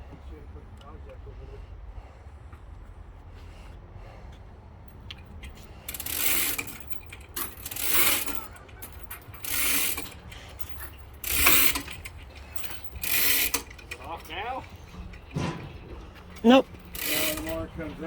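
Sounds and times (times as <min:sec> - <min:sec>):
hand ratchet ratcheting: 0:05.0 - 0:18.0.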